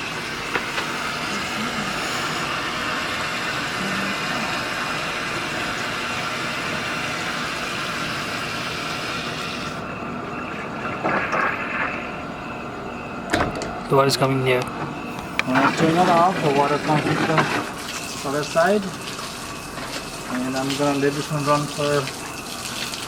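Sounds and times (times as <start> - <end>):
water rushing through a valve: 0.0 - 14.0, 15.0 - 23.0
clunks: 9.9 - 18.1.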